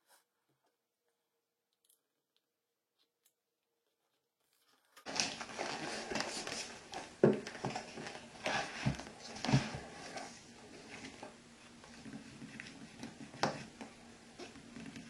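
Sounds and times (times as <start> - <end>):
plastic film rustling: 5.0 - 13.8.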